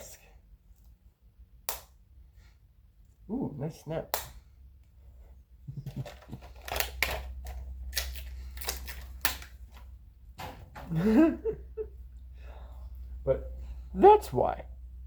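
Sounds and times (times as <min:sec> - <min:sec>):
plastic case snapping open and shut: 0:06.0 - 0:09.8.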